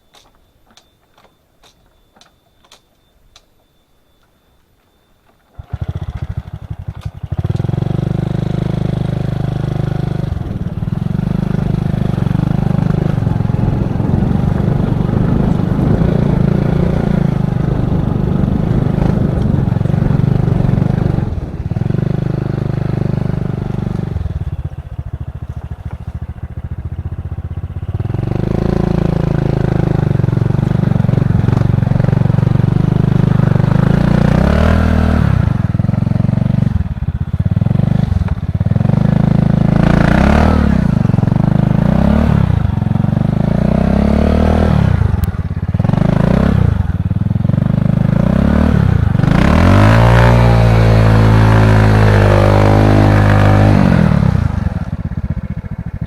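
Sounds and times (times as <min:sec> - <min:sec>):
motorcycle engine revving: 0:05.5 - 0:56.0.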